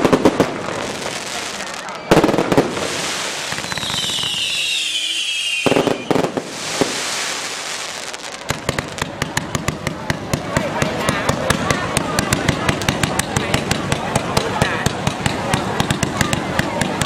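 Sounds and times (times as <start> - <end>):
firework whistle falling in pitch: 3.6 - 6.2.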